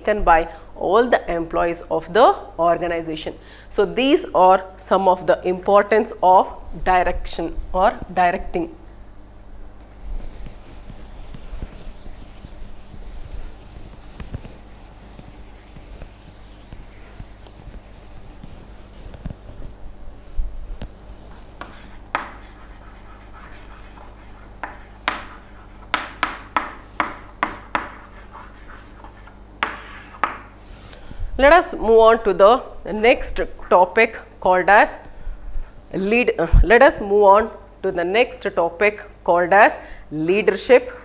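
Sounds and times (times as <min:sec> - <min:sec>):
low electrical hum: 0:00.0 - 0:41.0
scratching handling noise: 0:09.3 - 0:19.8.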